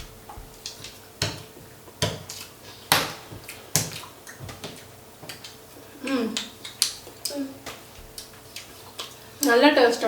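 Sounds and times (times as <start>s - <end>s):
sharp clicks of eating: 2.2s - 9.6s.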